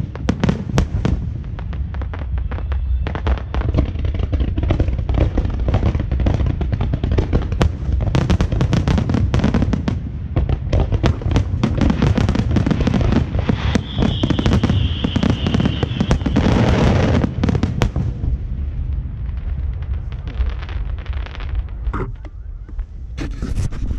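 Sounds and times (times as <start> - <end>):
fireworks crackling bangs: 0.0 - 23.3
firework whistle: 2.1 - 3.9, 13.4 - 17.3.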